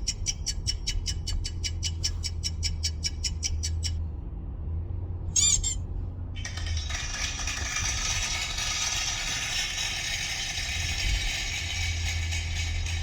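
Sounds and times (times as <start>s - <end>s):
steady low hum: 0.0s - 13.0s
fast ratchet-like rattling: 6.4s - 13.0s.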